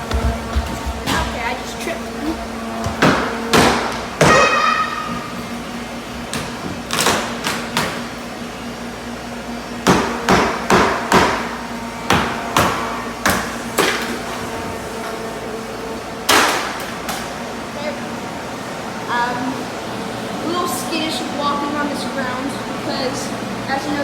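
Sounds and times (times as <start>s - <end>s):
steady low hum: 0.0s - 24.0s
hammer blows ringing: 2.8s - 5.3s, 9.8s - 14.2s.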